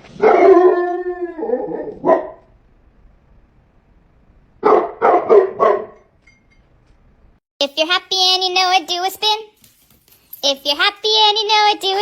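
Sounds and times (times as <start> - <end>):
dog barking: 0.1 - 0.8, 1.6 - 2.5, 4.6 - 6.0.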